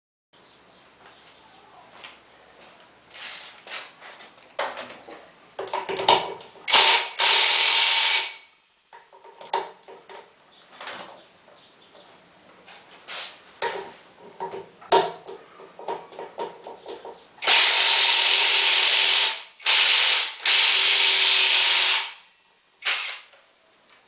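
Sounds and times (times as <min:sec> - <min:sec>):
clanks of tools and parts: 0:04.6 - 0:06.8, 0:09.0 - 0:11.2.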